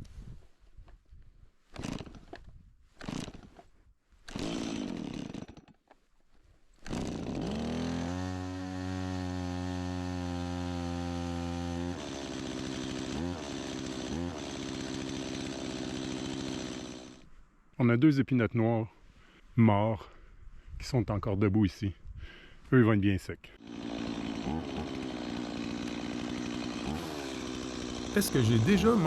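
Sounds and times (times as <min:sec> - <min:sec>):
chainsaw idling and revving: 0:01.8 - 0:02.2, 0:03.0 - 0:03.5, 0:04.3 - 0:05.8, 0:06.8 - 0:17.3, 0:23.6 - 0:29.0.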